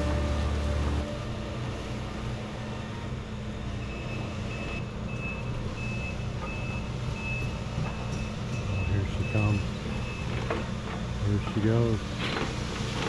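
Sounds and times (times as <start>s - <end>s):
travel alarm beeping: 0.0s - 1.0s, 8.5s - 10.3s
heavy tracked machine engine running: 0.0s - 1.9s.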